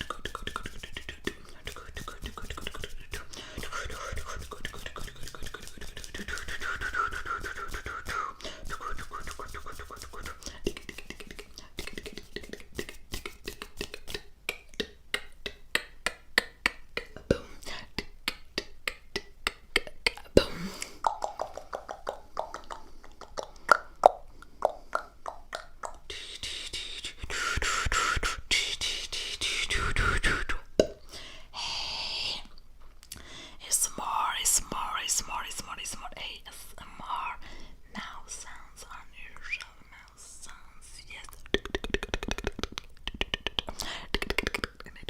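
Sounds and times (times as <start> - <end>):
breathy hissing mouth noise: 0.0 - 14.0, 26.1 - 30.5, 31.1 - 32.5
wet mouth clicks and pops: 0.0 - 26.1, 30.7 - 31.0, 32.5 - 33.2, 41.1 - 45.0.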